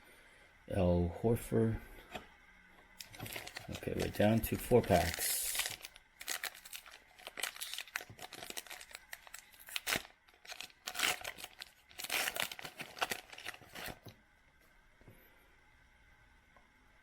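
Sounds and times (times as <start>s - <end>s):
foil wrapper tearing and crinkling: 3.0s - 14.1s.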